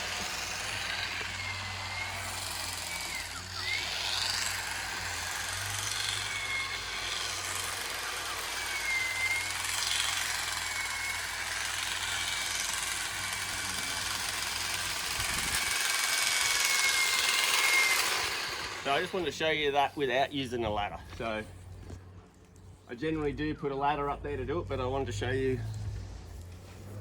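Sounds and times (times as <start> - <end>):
hedge trimmer running: 0.0 - 19.9.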